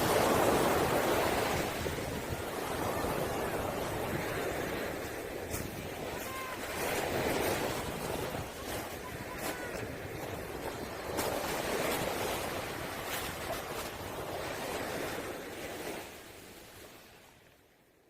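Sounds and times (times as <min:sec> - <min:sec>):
waves washing onto pebble beach: 0:00.0 - 0:17.3
pebbles clattering in surf: 0:04.3 - 0:15.8.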